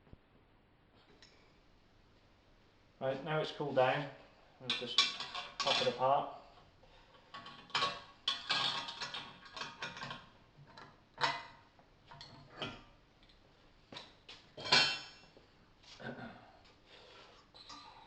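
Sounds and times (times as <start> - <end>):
metal clamps clinking and knocking: 4.7 - 6.0, 7.3 - 11.5.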